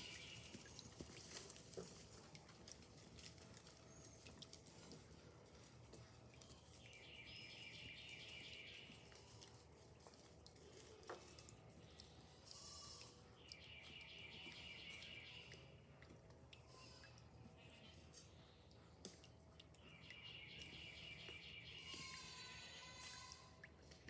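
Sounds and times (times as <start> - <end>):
goats bleating: 21.8 - 23.6.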